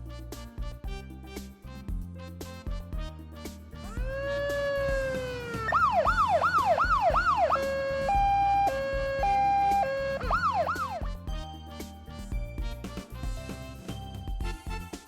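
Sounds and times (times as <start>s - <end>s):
emergency vehicle siren: 4.1s - 11.0s.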